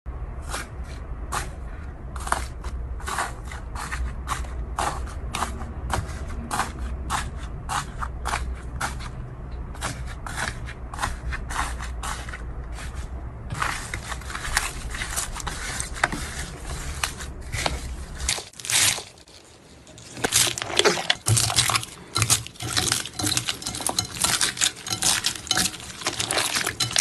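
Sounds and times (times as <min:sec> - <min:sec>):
sharp crackling and crunching: 0:13.5 - 0:27.0.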